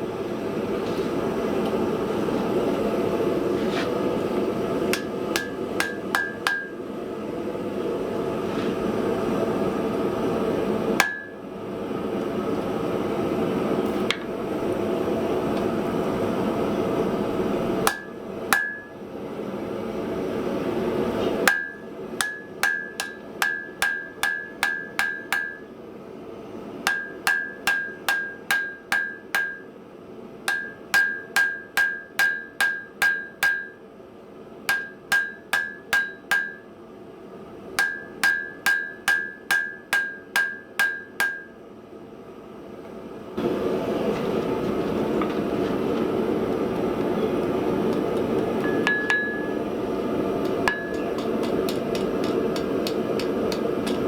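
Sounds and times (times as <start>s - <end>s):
hammer striking steel on anvil: 4.9s - 6.8s, 11.0s - 11.4s, 17.8s - 19.0s, 21.4s - 25.7s, 26.9s - 29.7s, 30.5s - 33.8s, 34.7s - 36.7s, 37.8s - 41.6s, 48.6s - 49.7s, 50.4s - 54.0s.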